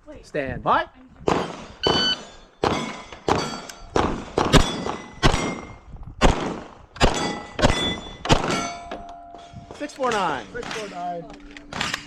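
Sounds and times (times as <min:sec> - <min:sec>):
pistol shots: 0:01.3 - 0:08.9
steel plate ringing: 0:01.8 - 0:04.0, 0:04.6 - 0:05.8, 0:07.1 - 0:11.2.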